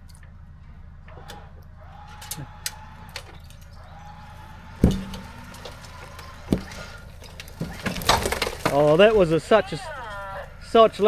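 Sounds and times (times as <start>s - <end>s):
smaller thud: 4.8s - 5.4s
heavy thud of car landing: 4.8s - 5.6s, 6.4s - 7.0s.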